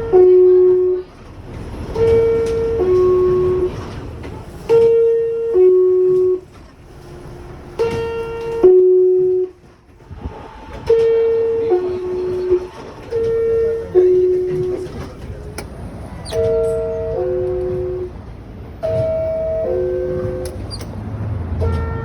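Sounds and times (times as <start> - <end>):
two-tone descending door chime: 18.8 - 20.6.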